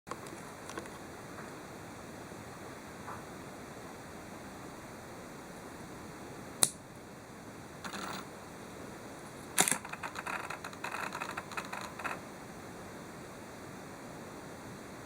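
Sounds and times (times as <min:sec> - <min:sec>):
camera lens rattling buzz: 0:09.6 - 0:12.2.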